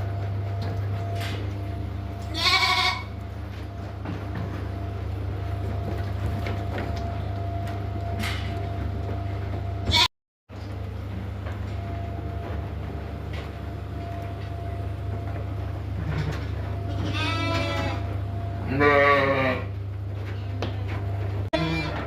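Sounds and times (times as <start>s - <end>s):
steady low hum: 0.0s - 22.0s
sheep bleating: 2.3s - 3.2s, 16.9s - 19.7s, 21.6s - 22.0s.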